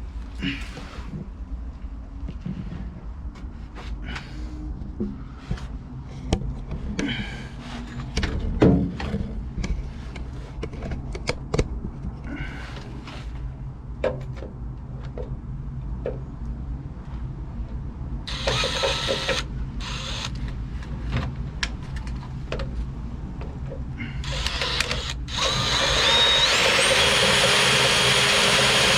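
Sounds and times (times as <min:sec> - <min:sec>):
electric drill drilling steel: 0:18.3 - 0:20.3, 0:24.2 - 0:28.9.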